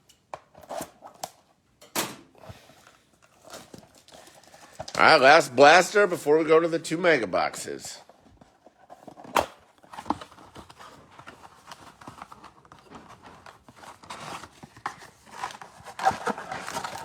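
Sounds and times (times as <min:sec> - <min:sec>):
cardboard and plastic rustling: 0:02.3 - 0:05.8, 0:08.0 - 0:17.0.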